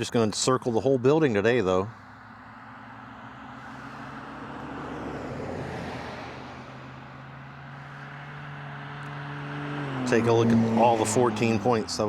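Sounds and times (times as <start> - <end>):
vehicle passing by: 1.9 - 12.0.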